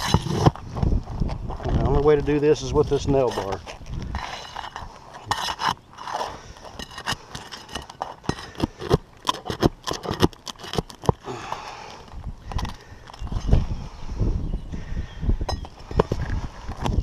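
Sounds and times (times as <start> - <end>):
nail bar scraping and prying: 0.0 - 0.6, 3.3 - 11.2.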